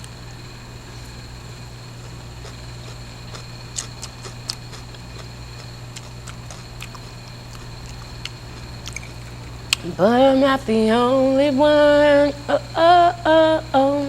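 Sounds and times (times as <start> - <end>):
steady low hum: 0.0 - 14.0
mouth clicks and smacks chewing: 2.4 - 9.8.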